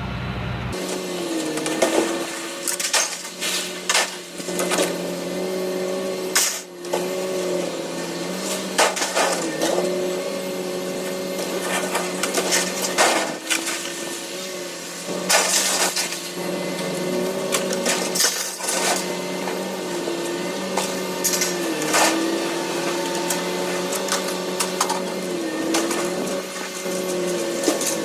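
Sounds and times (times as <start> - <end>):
machine humming: 0.0 - 0.8.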